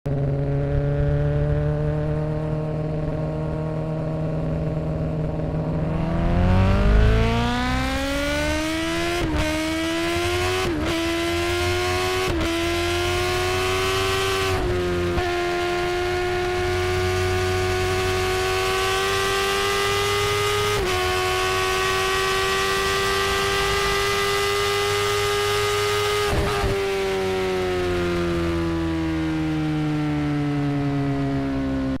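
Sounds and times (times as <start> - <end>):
motorcycle engine revving: 0.1 - 31.9.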